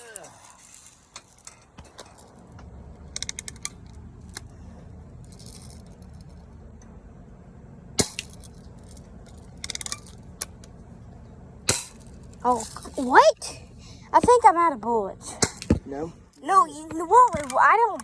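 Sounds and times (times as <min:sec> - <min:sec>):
bb gun firing crack: 0:08.0 - 0:08.4
small metallic clicks handling gun: 0:17.3 - 0:18.0.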